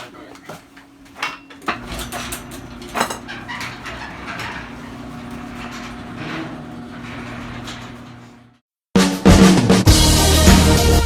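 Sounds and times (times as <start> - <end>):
electrical hum: 0.0 - 8.6.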